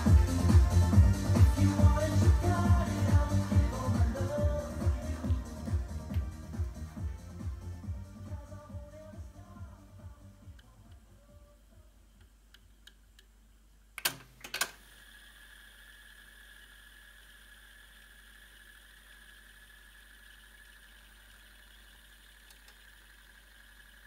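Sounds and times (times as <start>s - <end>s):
tape hiss: 0.0s - 24.0s
thin high whine: 14.8s - 24.0s
faint mechanical ticks: 18.8s - 24.0s.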